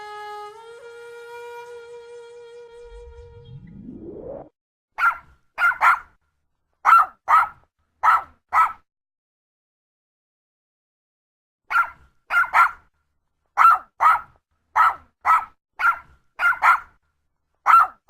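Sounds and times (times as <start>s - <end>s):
rising sweep: 2.7s - 4.6s
small dog barking: 5.0s - 6.2s, 6.8s - 8.8s, 11.7s - 12.9s, 13.6s - 17.0s, 17.6s - 18.0s.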